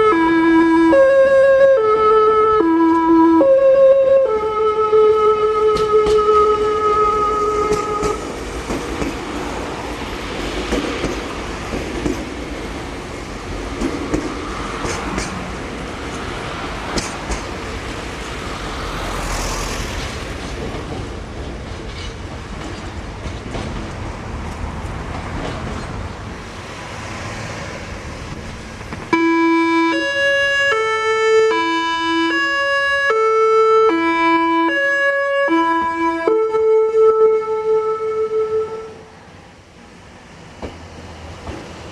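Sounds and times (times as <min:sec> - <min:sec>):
train music horn melody: 0:00.0 - 0:08.4, 0:29.1 - 0:39.2
train and traffic noise: 0:00.0 - 0:41.9.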